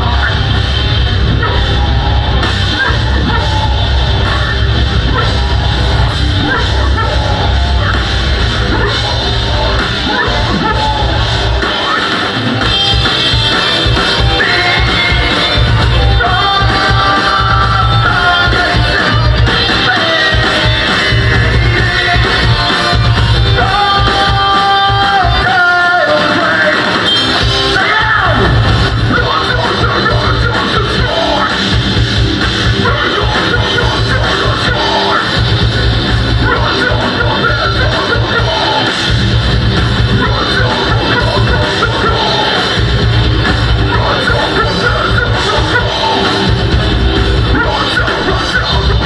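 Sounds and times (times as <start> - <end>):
bass and drums: 0.0 - 49.0
distorted guitars: 0.0 - 49.0
vocals: 0.0 - 49.0.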